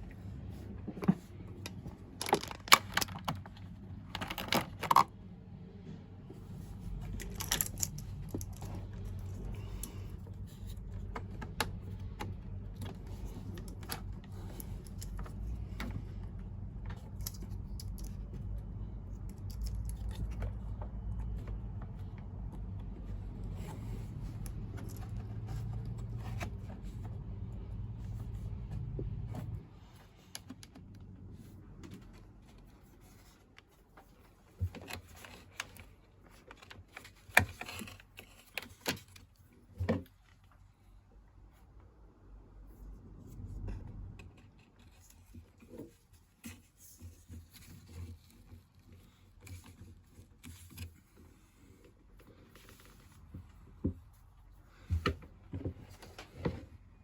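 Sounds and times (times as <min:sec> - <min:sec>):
light clicking and rattling: 0:06.4 - 0:40.9.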